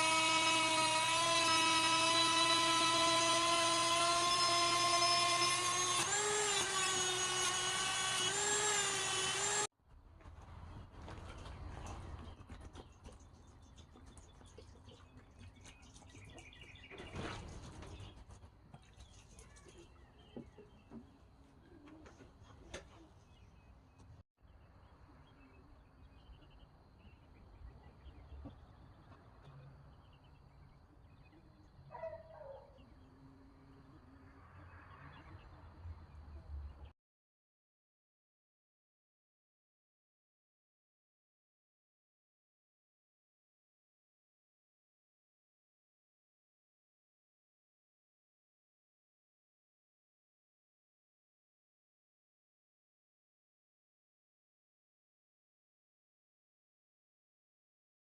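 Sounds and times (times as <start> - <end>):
power tool whining: 0.0 - 9.7.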